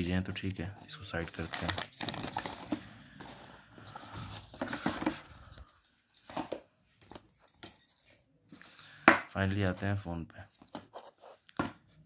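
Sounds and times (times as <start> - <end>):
rustling of box handling: 1.1 - 7.3.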